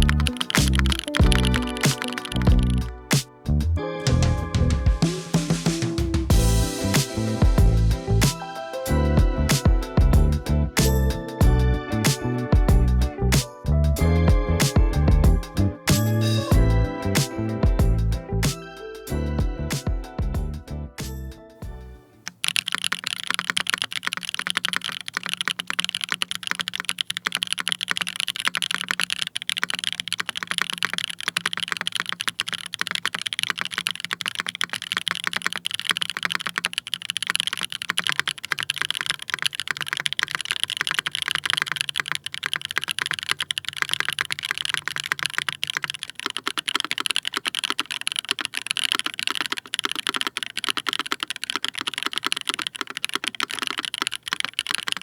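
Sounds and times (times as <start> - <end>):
fast mechanical keyboard typing: 0.0 - 3.2, 22.3 - 55.0.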